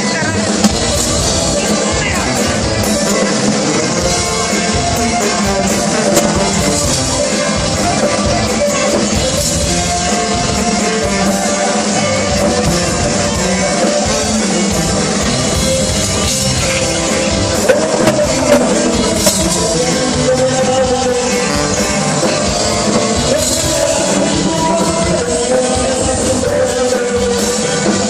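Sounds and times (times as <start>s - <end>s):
rock music with singing: 0.0s - 28.0s.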